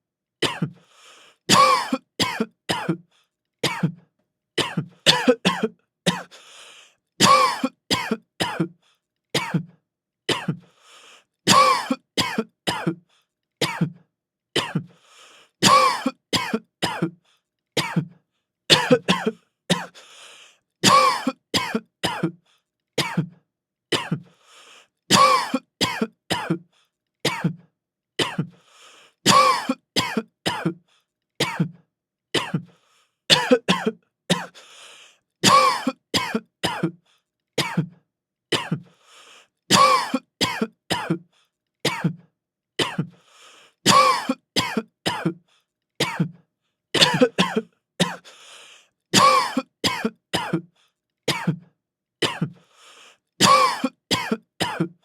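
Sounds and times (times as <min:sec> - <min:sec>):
man coughing: 0:00.4 - 0:00.8, 0:01.5 - 0:03.0, 0:03.6 - 0:04.0, 0:04.6 - 0:06.3, 0:07.2 - 0:08.7, 0:09.4 - 0:09.7, 0:11.5 - 0:13.0, 0:14.6 - 0:14.9, 0:15.6 - 0:17.2, 0:17.8 - 0:18.1, 0:18.7 - 0:20.0, 0:20.8 - 0:22.3, 0:23.0 - 0:23.4, 0:25.1 - 0:26.6, 0:27.3 - 0:27.6, 0:29.3 - 0:30.8, 0:31.4 - 0:31.8, 0:32.4 - 0:32.6, 0:33.3 - 0:34.6, 0:35.4 - 0:37.0, 0:37.6 - 0:38.0, 0:38.6 - 0:38.8, 0:39.7 - 0:41.2, 0:41.9 - 0:42.2, 0:42.8 - 0:43.1, 0:43.9 - 0:45.4, 0:46.0 - 0:46.3, 0:47.0 - 0:48.3, 0:49.2 - 0:50.6, 0:51.3 - 0:51.6, 0:52.2 - 0:52.5, 0:53.4 - 0:54.9.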